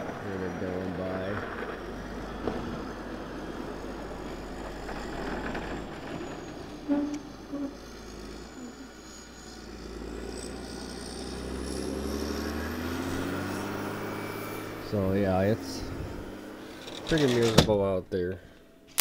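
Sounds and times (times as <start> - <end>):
vehicle accelerating past: 0.0 - 17.5
vehicles going by: 0.0 - 19.0
wind rushing: 15.8 - 16.4.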